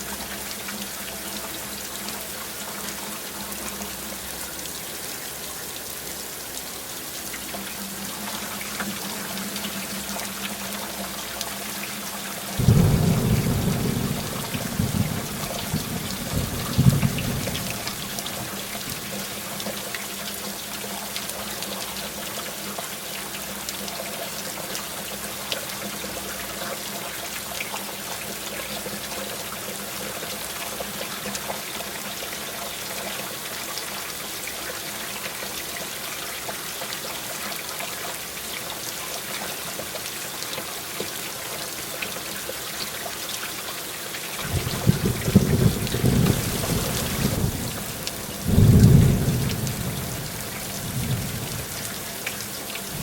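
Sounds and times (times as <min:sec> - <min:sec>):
heavy rain falling: 0:00.0 - 0:53.0
thunder rumble: 0:12.6 - 0:18.4, 0:44.4 - 0:51.8.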